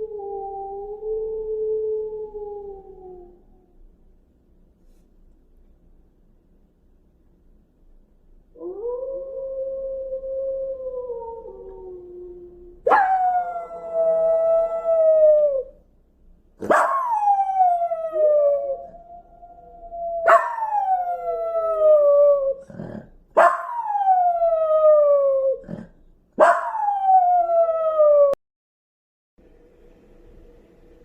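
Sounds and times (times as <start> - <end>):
wolf howls through a speaker: 0.0 - 3.6, 8.6 - 15.7, 16.8 - 22.6, 26.4 - 28.4.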